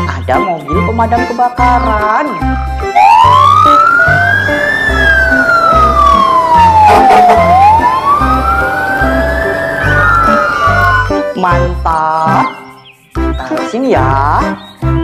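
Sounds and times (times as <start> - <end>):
background music with beat: 0.0 - 15.0
fire engine siren wailing: 2.9 - 11.2.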